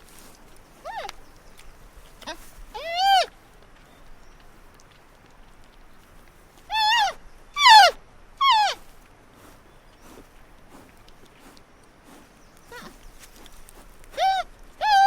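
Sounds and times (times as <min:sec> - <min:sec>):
animal calls: 0:00.8 - 0:01.2, 0:02.2 - 0:03.3, 0:06.7 - 0:08.9, 0:12.6 - 0:13.5, 0:14.1 - 0:15.0.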